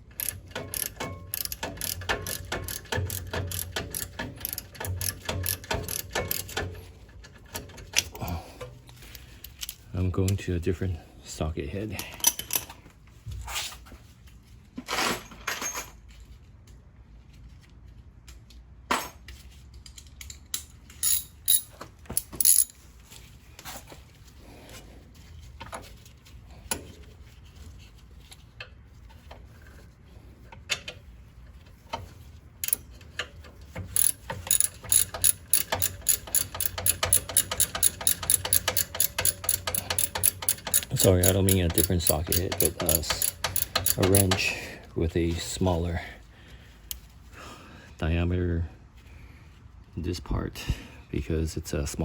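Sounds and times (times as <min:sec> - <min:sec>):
ratchet wrench clicking: 0:00.1 - 0:06.7, 0:20.5 - 0:22.7, 0:32.6 - 0:32.9, 0:33.8 - 0:44.4
hand tools clinking: 0:20.1 - 0:22.8, 0:33.9 - 0:44.6.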